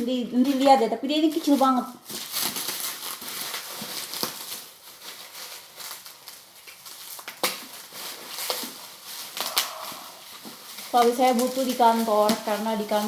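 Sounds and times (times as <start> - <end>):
packaging rustling: 0.4 - 13.0.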